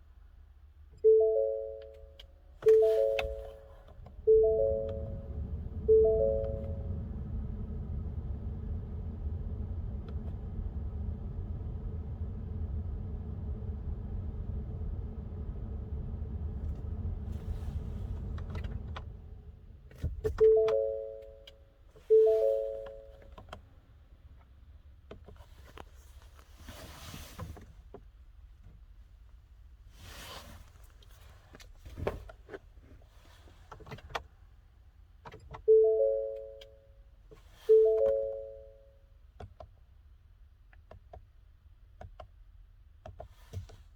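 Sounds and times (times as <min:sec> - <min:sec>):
car warning chime: 0:01.0 - 0:06.9, 0:20.4 - 0:23.3, 0:35.6 - 0:37.0, 0:37.7 - 0:39.0.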